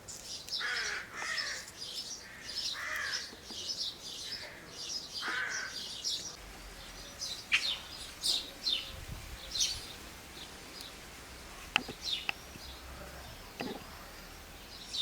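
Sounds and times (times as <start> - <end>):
small birds chirping: 0.0 - 15.0
sharp clicks: 11.6 - 14.7.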